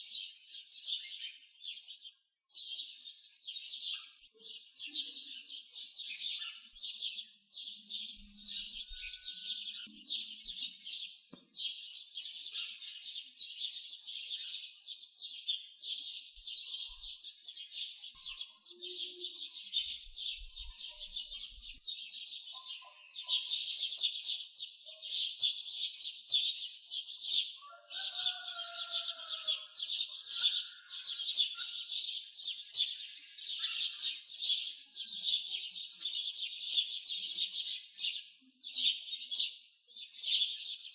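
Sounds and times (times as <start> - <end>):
high-pitched chirping chorus: 16.8 - 39.0.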